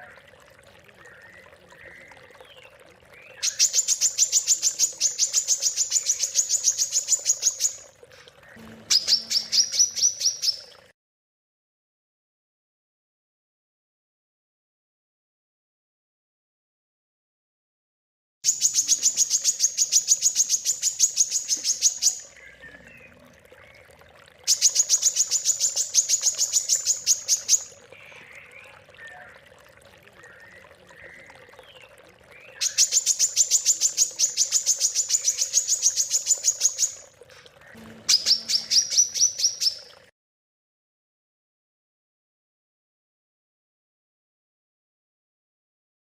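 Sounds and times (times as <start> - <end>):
soft bird chirps: 1.0 - 10.8, 18.5 - 40.0
songbird trilling: 3.2 - 7.8, 8.5 - 10.7, 37.6 - 39.9.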